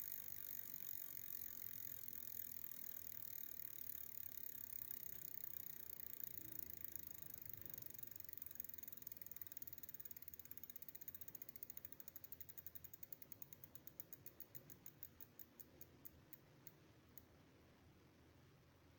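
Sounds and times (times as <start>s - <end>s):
wheel spinning down: 0.0s - 12.7s
freewheel ratchet clicking: 0.0s - 16.8s.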